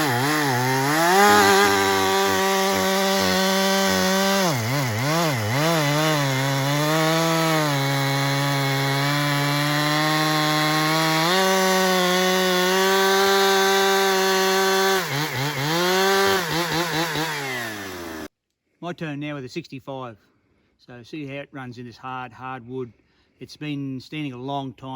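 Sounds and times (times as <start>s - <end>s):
chainsaw cutting hard wood: 0.0s - 18.3s.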